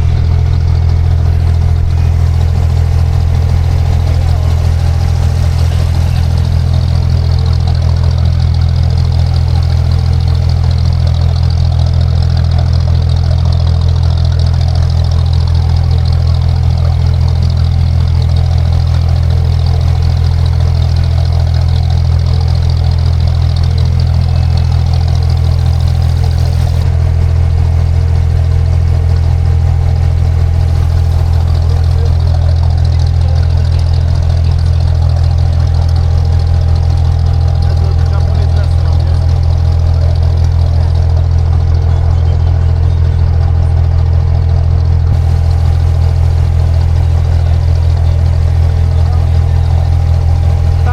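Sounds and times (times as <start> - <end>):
boat engine running: 0.0 - 50.9.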